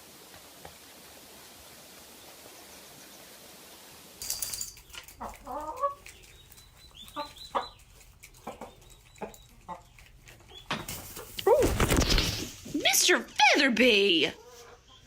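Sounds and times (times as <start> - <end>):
chicken clucking and squawking: 5.2 - 11.8, 14.4 - 15.0.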